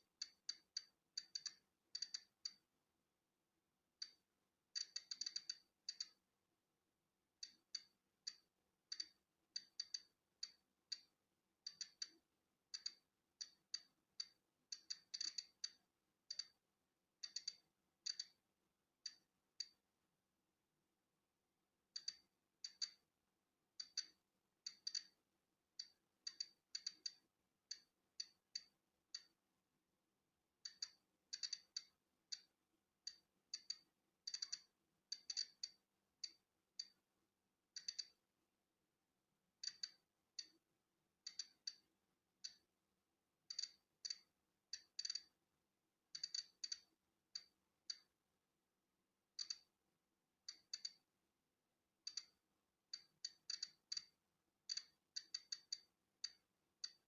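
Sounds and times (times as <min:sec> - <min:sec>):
geiger counter clicking: 0:00.0 - 0:02.6, 0:04.8 - 0:06.2, 0:07.4 - 0:11.1, 0:11.7 - 0:16.6, 0:17.2 - 0:18.4, 0:21.9 - 0:23.1, 0:23.8 - 0:25.2, 0:25.8 - 0:29.4, 0:30.6 - 0:32.5, 0:33.1 - 0:37.0, 0:37.8 - 0:38.2, 0:39.6 - 0:40.6, 0:41.3 - 0:42.6, 0:43.5 - 0:45.3, 0:46.1 - 0:48.1, 0:49.4 - 0:49.7, 0:50.4 - 0:51.0, 0:52.0 - 0:57.0.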